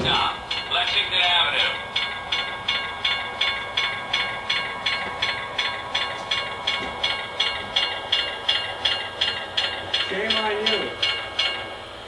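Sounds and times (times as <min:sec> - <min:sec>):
steam locomotive chuffing: 0:00.0 - 0:12.0.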